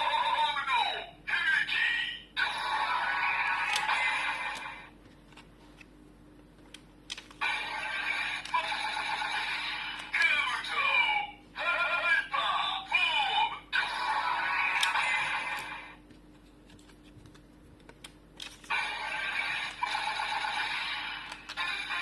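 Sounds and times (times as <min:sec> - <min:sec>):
toy electronic voice and sound effects: 0:00.0 - 0:04.9, 0:07.4 - 0:16.0, 0:18.7 - 0:22.0.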